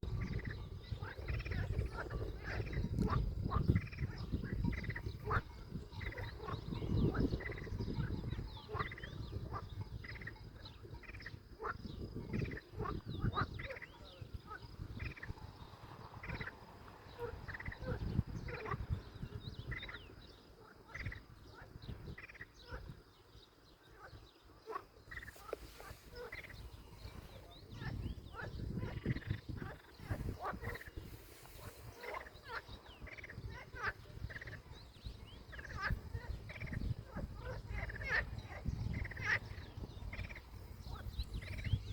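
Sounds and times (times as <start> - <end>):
animal trills and chirps: 0.0 - 23.0
animal chirps and trills: 23.9 - 41.9.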